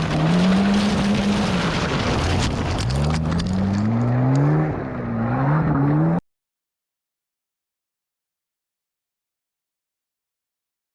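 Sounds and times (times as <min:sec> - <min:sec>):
car engine revving: 0:00.0 - 0:06.2.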